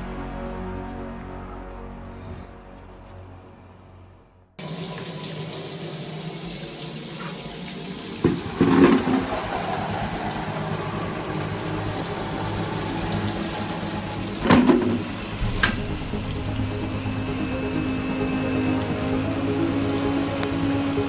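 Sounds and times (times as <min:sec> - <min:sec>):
water running from a tap: 0:04.6 - 0:21.0
water splashing: 0:04.6 - 0:21.0.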